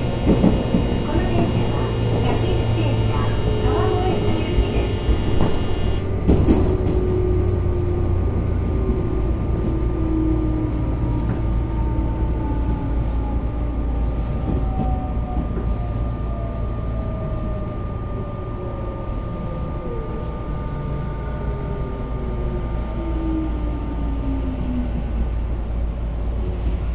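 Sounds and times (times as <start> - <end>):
electric train motor whine: 0.0 - 8.4.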